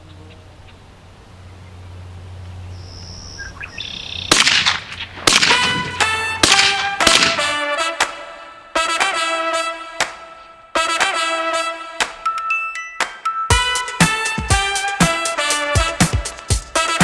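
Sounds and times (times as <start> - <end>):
brass held notes: 5.3 - 12.3, 13.5 - 17.0.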